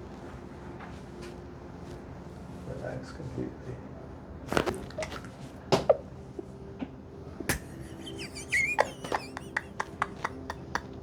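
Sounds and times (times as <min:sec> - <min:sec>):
neck joint cracking: 0:04.5 - 0:05.4, 0:07.5 - 0:08.0
person laughing: 0:07.5 - 0:11.0.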